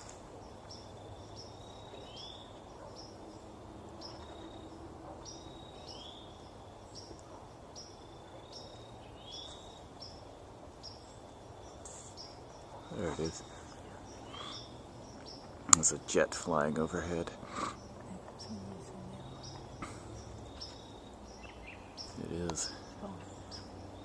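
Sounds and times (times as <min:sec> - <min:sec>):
birds chirping: 0:00.0 - 0:24.0
insects chirping: 0:00.0 - 0:24.0.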